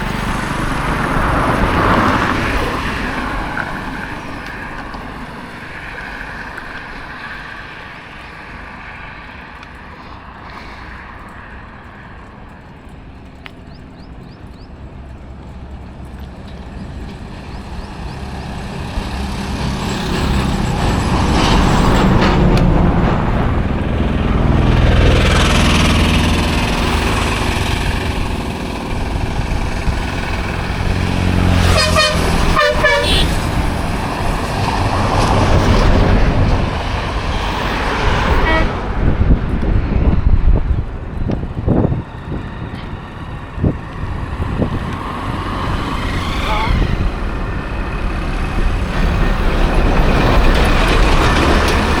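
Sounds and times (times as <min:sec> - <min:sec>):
highway traffic passing: 0:00.0 - 0:52.0
vehicle horn toot: 0:31.6 - 0:33.5, 0:38.4 - 0:38.8, 0:46.3 - 0:47.0.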